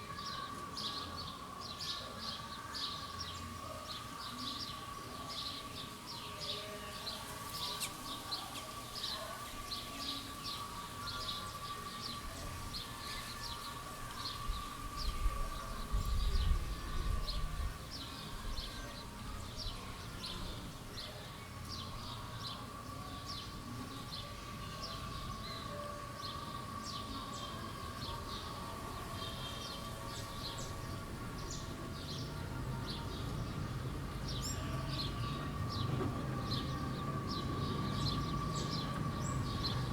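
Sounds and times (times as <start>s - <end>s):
small birds chirping: 0.0s - 39.9s
traffic rumble: 21.6s - 39.9s
vehicle passing: 32.0s - 39.9s.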